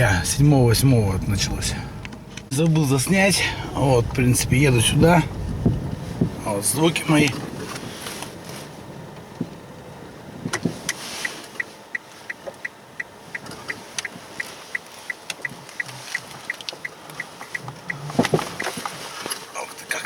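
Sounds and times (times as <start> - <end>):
suspension knocks: 0.0 - 7.9, 16.5 - 18.9
quiet road noise: 0.0 - 20.0
turn signal ticking: 3.3 - 6.5, 10.4 - 19.0.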